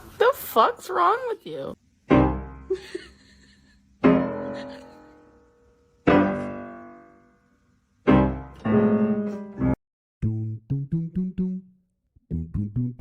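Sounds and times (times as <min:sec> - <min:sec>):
piano chords ringing: 0:02.1 - 0:02.7, 0:04.0 - 0:09.8
quick piano notes: 0:08.1 - 0:09.8.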